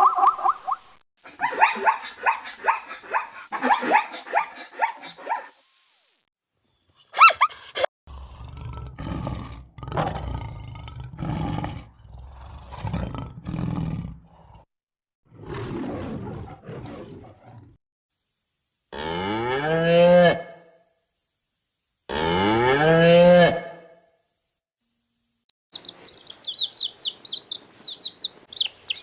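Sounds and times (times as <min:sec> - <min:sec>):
lion roaring: 0:08.1 - 0:14.7, 0:15.3 - 0:17.8
cow mooing: 0:22.1 - 0:23.7.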